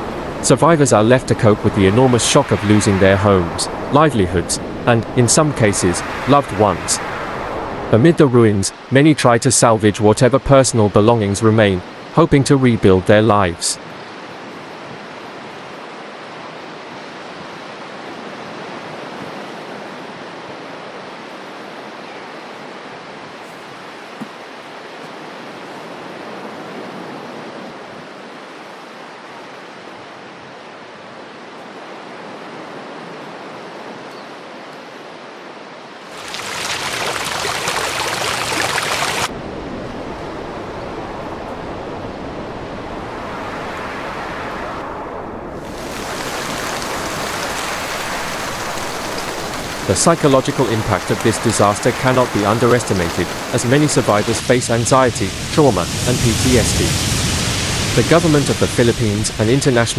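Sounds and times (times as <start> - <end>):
water rushing: 0.0 - 16.6, 34.6 - 59.9.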